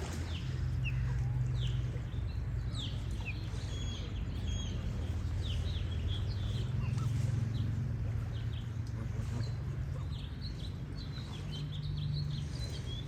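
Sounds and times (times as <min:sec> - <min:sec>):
songbirds chirping: 0:00.0 - 0:13.0
steady low hum: 0:00.0 - 0:13.0.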